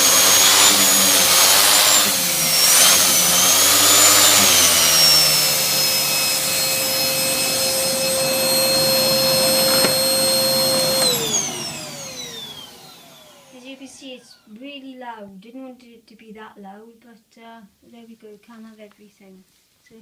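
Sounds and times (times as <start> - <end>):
vacuum cleaner whining: 0.0 - 14.5.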